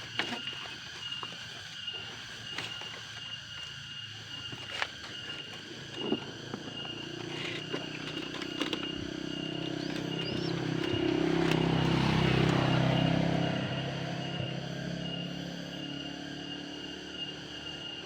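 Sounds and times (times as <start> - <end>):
motorcycle engine passing: 5.9 - 17.8.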